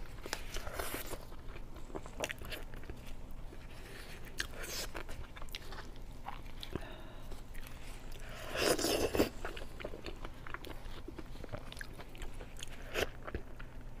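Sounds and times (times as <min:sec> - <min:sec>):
person biting and chewing: 0:07.5 - 0:13.7.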